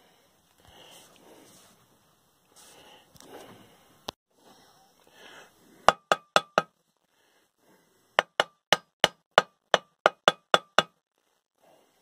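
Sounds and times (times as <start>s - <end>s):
hammer striking metal: 5.9s - 6.7s, 8.2s - 11.0s.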